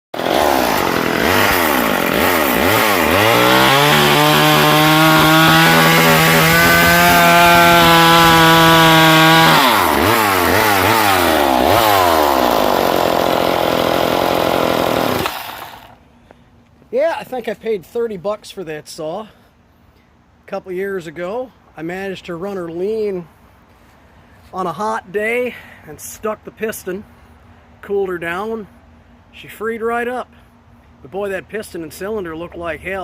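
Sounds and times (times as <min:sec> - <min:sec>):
chainsaw engine revving: 0:00.2 - 0:16.0.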